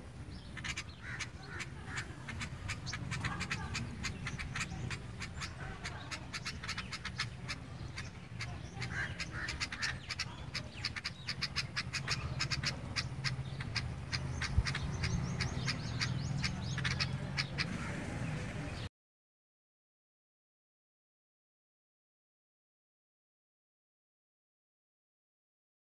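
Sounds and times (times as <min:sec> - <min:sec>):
sparrows chirping: 0:00.0 - 0:18.9.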